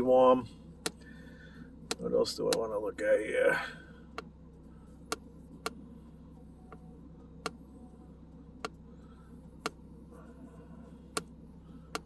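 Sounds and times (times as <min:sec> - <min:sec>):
car engine idling faintly: 0:00.0 - 0:12.0.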